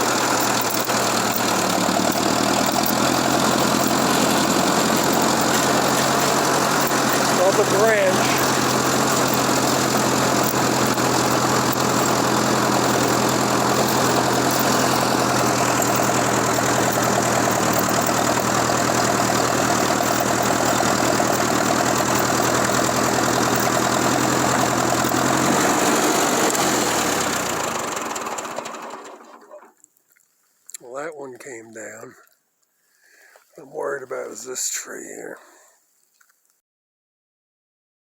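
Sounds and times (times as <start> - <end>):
vehicle engine running: 0.0 - 29.6.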